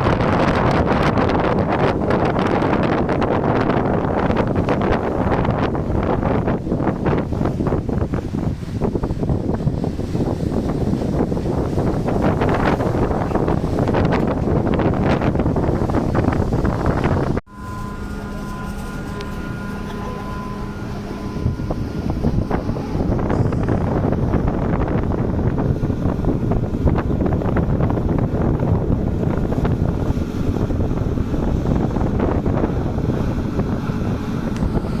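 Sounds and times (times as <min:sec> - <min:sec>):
ship engine rumble: 0:00.0 - 0:35.0
wind buffeting microphone: 0:00.0 - 0:35.0
steady hum: 0:10.6 - 0:35.0.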